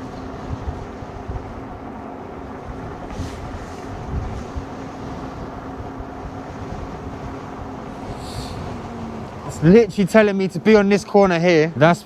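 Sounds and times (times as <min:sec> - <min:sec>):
road and vehicle noise: 0:00.0 - 0:12.0
wind buffeting microphone: 0:00.0 - 0:12.0
brief hiss: 0:03.1 - 0:04.0, 0:07.9 - 0:09.2.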